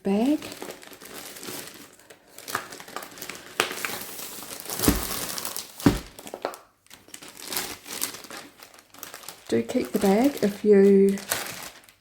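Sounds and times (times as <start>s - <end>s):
plastic bag crinkling: 0.1s - 12.0s
dull knocks: 4.8s - 5.2s, 5.8s - 6.1s.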